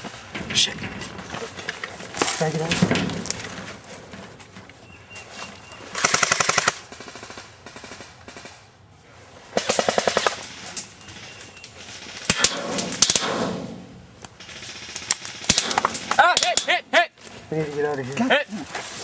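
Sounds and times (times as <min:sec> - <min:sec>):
airsoft guns firing bursts: 0:05.9 - 0:08.6, 0:09.6 - 0:13.8, 0:14.4 - 0:17.0.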